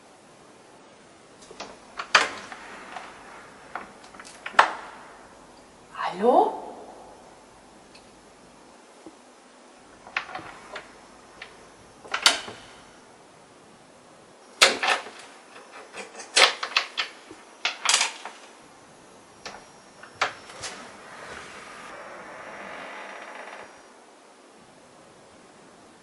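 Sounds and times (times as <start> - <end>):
soft hiss: 0.0 - 26.0
knocks clicks and clatters: 10.0 - 12.9.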